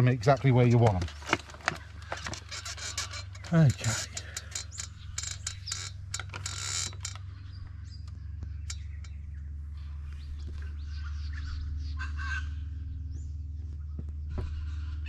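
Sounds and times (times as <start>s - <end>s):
low background hum: 0.0s - 15.0s
metal bracket clicking and scraping: 0.7s - 7.4s.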